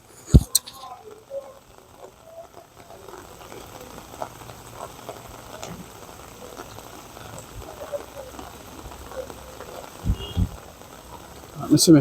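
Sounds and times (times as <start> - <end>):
water bubbling and pattering: 0.0 - 12.0.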